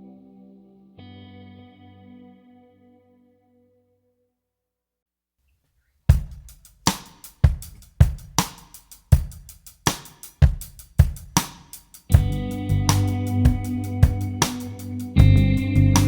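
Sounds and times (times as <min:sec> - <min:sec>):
drum kit beat: 0:06.1 - 0:16.0.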